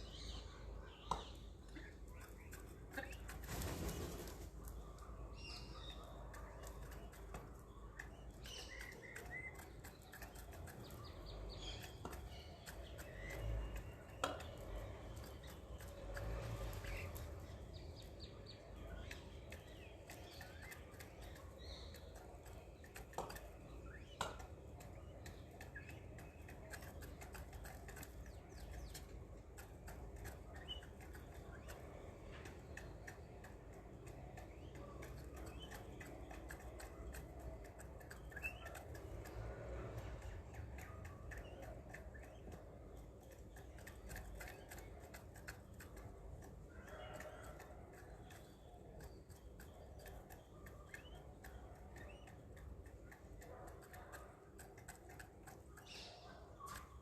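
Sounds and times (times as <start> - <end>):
faint bird chirps: 0.0 - 40.1
bird pecking at food: 0.3 - 57.0.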